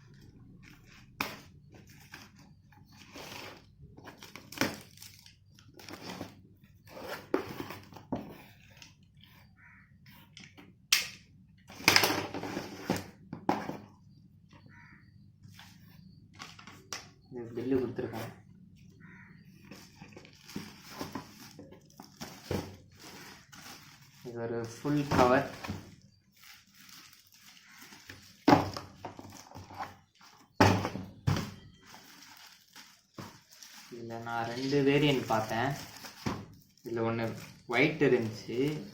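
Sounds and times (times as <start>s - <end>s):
packaging rustling: 18.9s - 38.9s.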